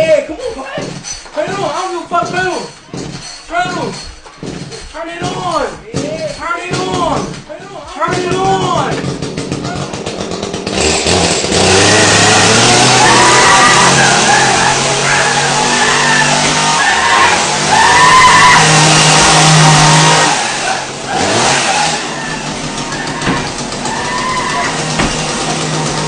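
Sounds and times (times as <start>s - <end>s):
chainsaw engine revving: 8.1s - 26.0s.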